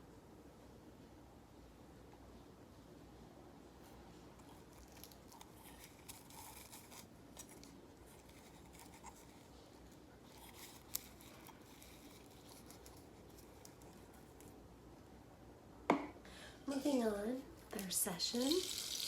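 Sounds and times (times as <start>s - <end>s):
faint rustling and scratching: 3.8s - 14.6s.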